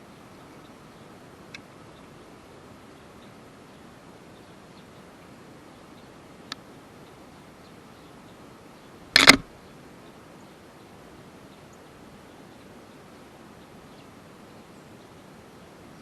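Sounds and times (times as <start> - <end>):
background hiss: 0.0 - 16.0
faint tick: 1.5 - 1.7.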